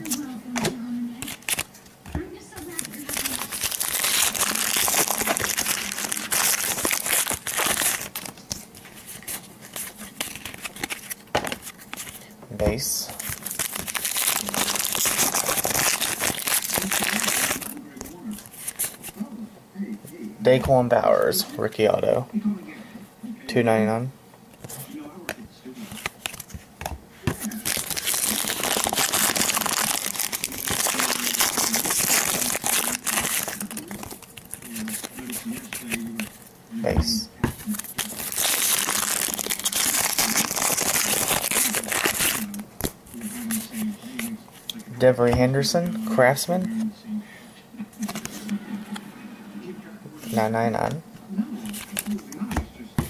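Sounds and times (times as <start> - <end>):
foil wrapper crinkling: 0.0 - 19.2, 27.3 - 36.5, 37.5 - 44.8, 51.6 - 52.3.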